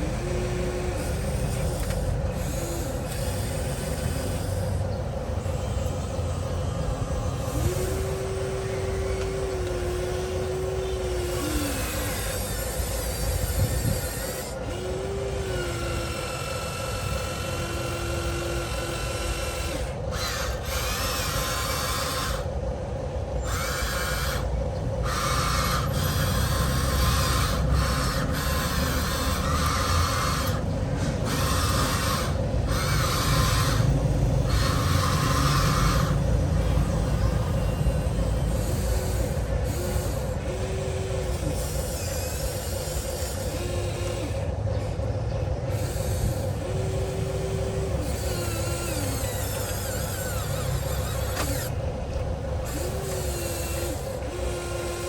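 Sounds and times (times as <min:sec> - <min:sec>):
rasping grinding: 0:00.0 - 0:22.6, 0:23.4 - 0:44.9, 0:45.7 - 0:55.0
electric motors whining: 0:00.0 - 0:55.0.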